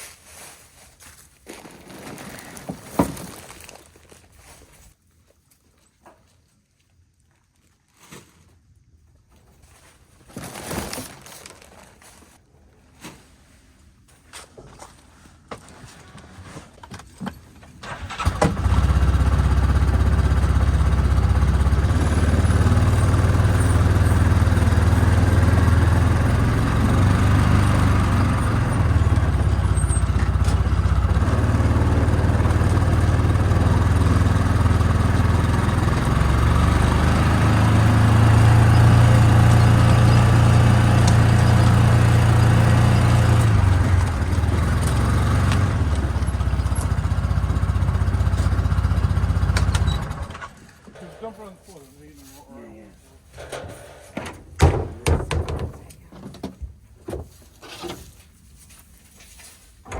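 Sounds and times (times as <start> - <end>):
vehicle engine starting and running: 17.7 - 51.3.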